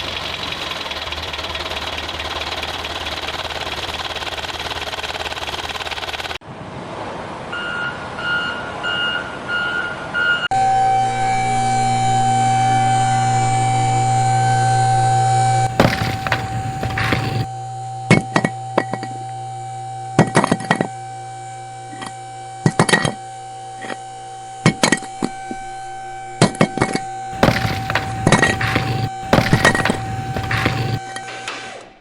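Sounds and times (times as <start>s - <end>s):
steady droning tone: 15.7s - 17.5s, 27.4s - 31.0s.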